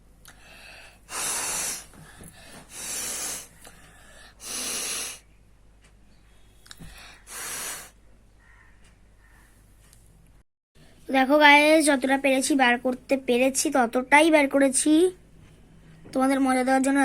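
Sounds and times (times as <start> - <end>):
quiet breaths: 0.2 - 8.0
woman blowing her nose: 1.1 - 1.9, 2.7 - 3.6, 4.4 - 5.2, 7.3 - 7.9.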